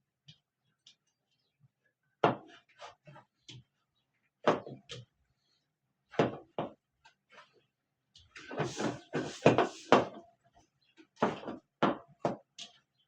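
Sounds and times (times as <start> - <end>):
knocks and thumps of kitchen work: 2.2 - 3.1, 4.4 - 5.1, 6.1 - 6.9, 8.2 - 10.4, 11.1 - 12.8.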